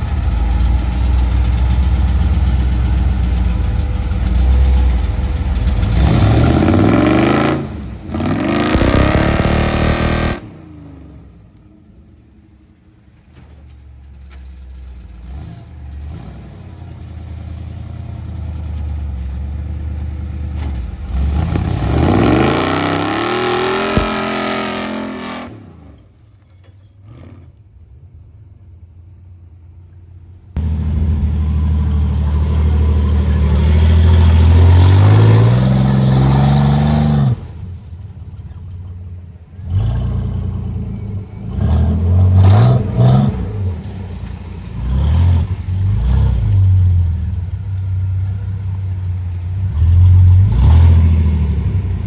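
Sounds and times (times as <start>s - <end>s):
off-road vehicle engine revving: 0.0s - 11.4s, 14.8s - 26.1s, 30.6s - 52.0s.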